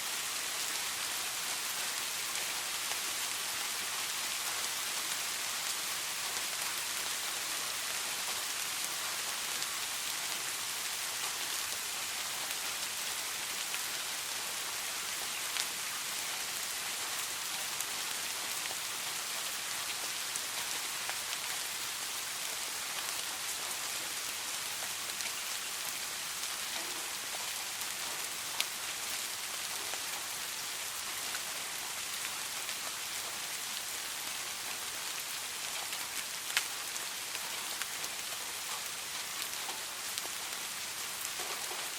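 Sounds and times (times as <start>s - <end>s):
soft rain falling: 0.0s - 41.9s.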